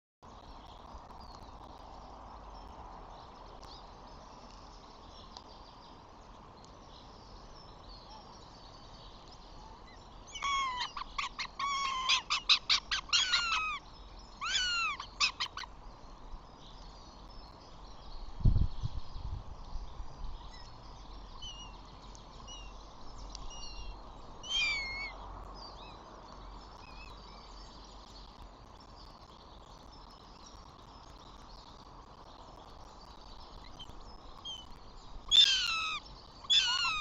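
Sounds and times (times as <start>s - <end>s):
faint wind: 0.2s - 37.0s
distant bird chirps: 6.6s - 16.0s, 16.8s - 37.0s.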